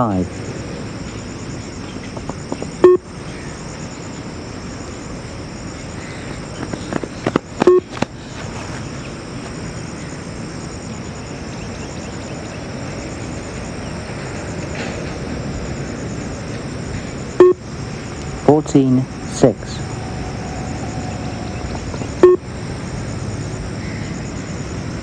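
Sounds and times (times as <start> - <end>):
insects chirping: 0.0 - 25.0
short electronic beep: 2.8 - 3.0, 7.6 - 7.9, 17.4 - 17.6, 22.2 - 22.4.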